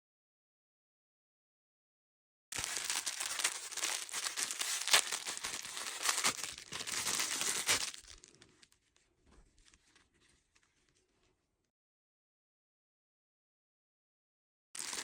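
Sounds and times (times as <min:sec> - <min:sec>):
packaging crinkling and tearing: 0:02.6 - 0:08.8, 0:14.8 - 0:15.0.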